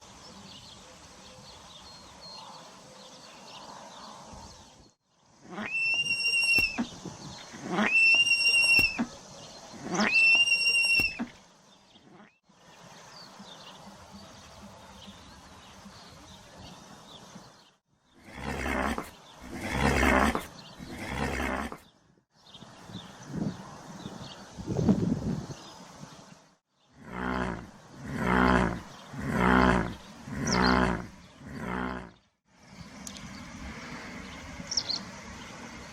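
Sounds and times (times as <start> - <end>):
horse whinnying: 5.5 - 7.0, 7.6 - 9.1, 9.8 - 11.4, 18.2 - 21.8, 27.0 - 32.1
small bird chirps: 5.5 - 12.4, 34.3 - 35.1.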